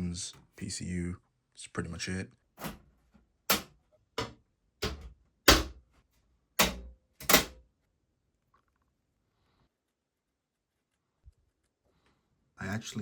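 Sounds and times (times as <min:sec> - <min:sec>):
sharp knocks: 0:03.5 - 0:05.8, 0:06.6 - 0:07.6.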